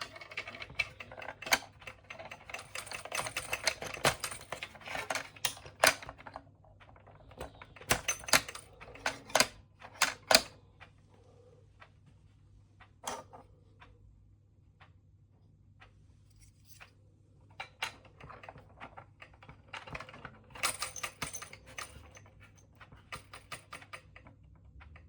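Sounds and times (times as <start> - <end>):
plastic alarm clock rattling: 0.0 - 10.4.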